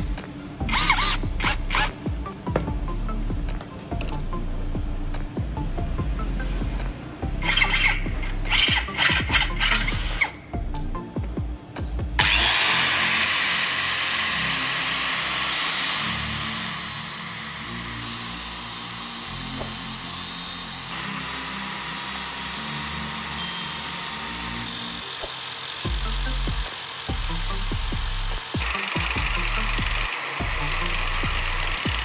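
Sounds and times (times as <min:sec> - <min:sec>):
power tool working metal: 0:00.0 - 0:11.1, 0:12.2 - 0:32.0.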